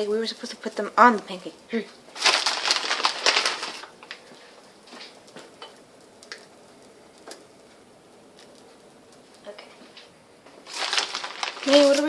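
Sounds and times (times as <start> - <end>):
kitchen rustling and scraping: 0.0 - 5.8, 9.4 - 12.0.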